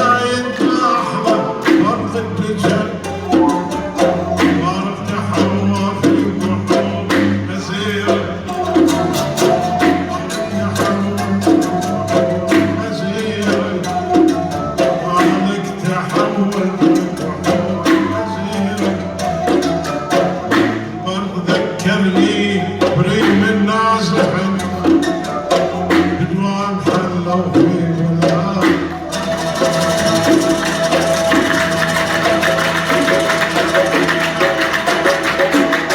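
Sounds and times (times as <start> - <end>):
hand drum strokes: 0.0 - 35.9
sustained melodic instrument tones: 29.0 - 35.9.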